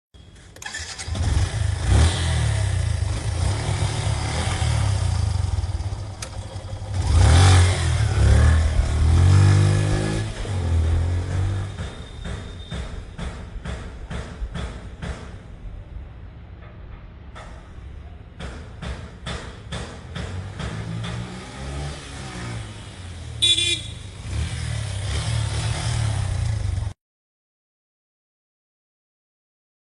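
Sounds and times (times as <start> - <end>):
motorcycle starter click: 0.6 - 1.2, 6.2 - 6.8
motorcycle engine revving: 0.6 - 11.9, 20.2 - 27.0
horn honk: 23.4 - 24.4.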